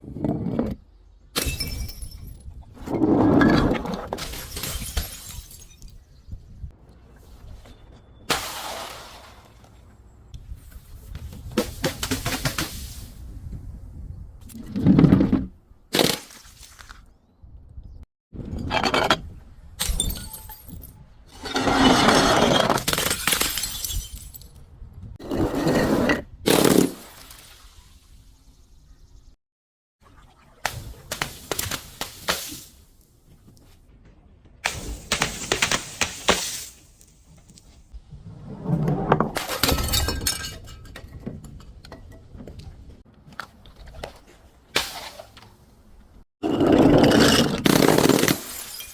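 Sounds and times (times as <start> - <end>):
glass bottle breaking: 1.4 - 2.5, 4.2 - 6.0, 19.8 - 21.0, 22.7 - 24.5, 39.4 - 41.0, 47.2 - 48.9.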